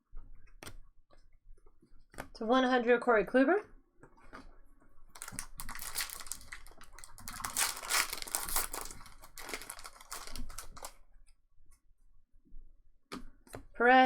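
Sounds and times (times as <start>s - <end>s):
foil wrapper crinkling and tearing: 5.1s - 11.0s.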